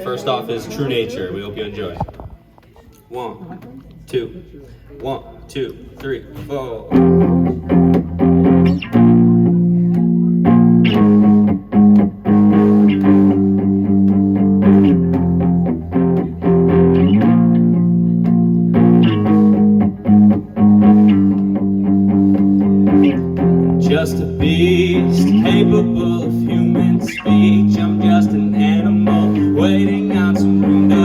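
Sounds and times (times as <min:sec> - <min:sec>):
bass guitar: 0:06.9 - 0:31.0
electric guitar chords: 0:06.9 - 0:31.0.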